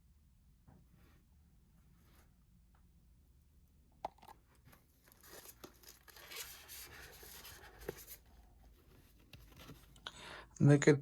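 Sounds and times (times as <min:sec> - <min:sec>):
packaging rustling: 0:05.0 - 0:08.3.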